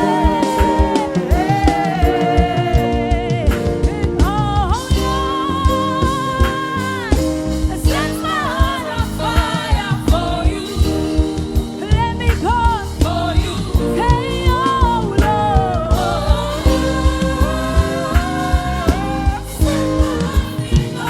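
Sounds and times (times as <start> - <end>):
person singing with vibrato: 0.0 - 21.0
sustained instrumental chords: 0.0 - 21.0.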